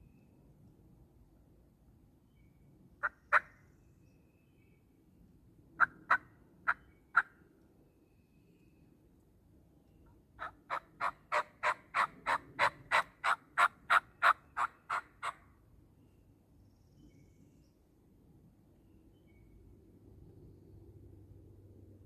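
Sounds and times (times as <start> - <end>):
turkey yelps: 10.4 - 15.4.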